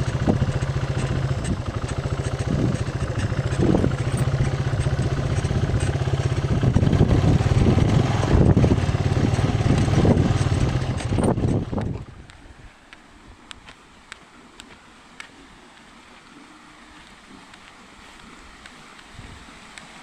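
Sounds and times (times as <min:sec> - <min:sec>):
engine running with low throb: 0:00.0 - 0:12.4.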